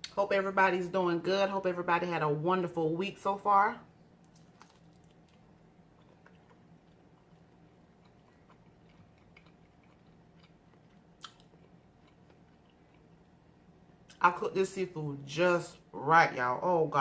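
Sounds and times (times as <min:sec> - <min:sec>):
chewing fried food: 0:04.2 - 0:14.2.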